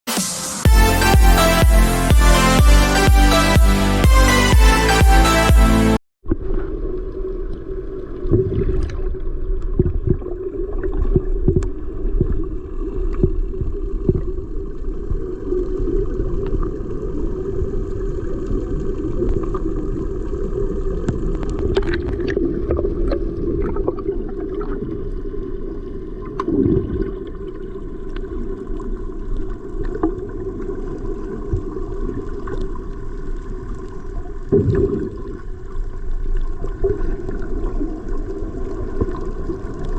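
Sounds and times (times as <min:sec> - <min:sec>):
steady low drone: 0:00.1 - 0:06.0
water sounds: 0:00.1 - 0:39.9.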